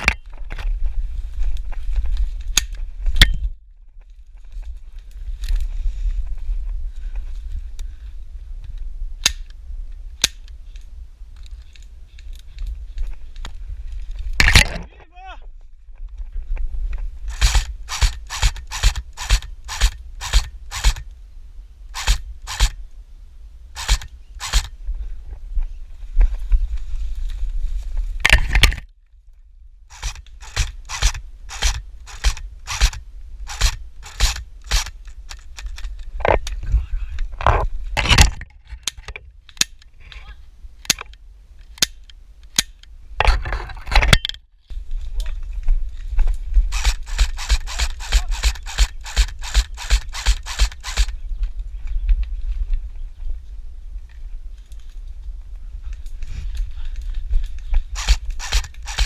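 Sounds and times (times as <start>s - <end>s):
low rumble on microphone: 19.4s - 28.4s
footsteps crunching on dry ground: 24.4s - 28.2s
scraping and rubbing: 29.9s - 36.4s, 46.7s - 51.1s, 57.8s - 59.0s.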